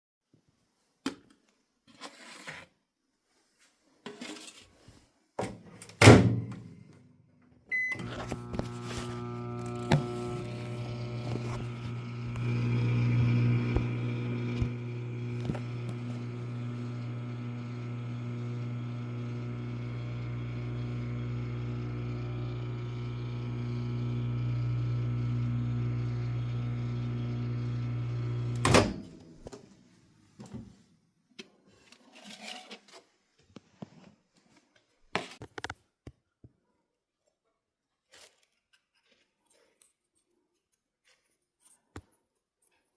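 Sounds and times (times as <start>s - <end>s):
microwave oven humming: 7.7s - 29.1s.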